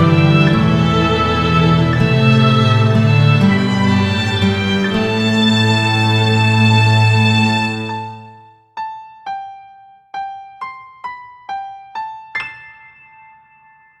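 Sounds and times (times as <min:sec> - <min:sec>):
held chord: 0:00.0 - 0:08.5
piano-like melody: 0:00.0 - 0:14.0.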